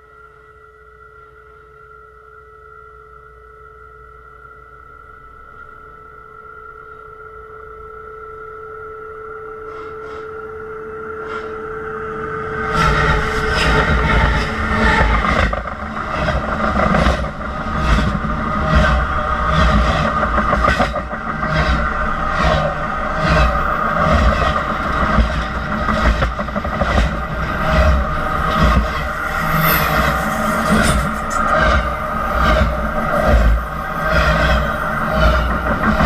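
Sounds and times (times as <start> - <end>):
metallic ringing of wheels on rail: 6.7 - 36.0
train rumbling: 9.6 - 36.0
wheels clacking on rails: 12.6 - 36.0.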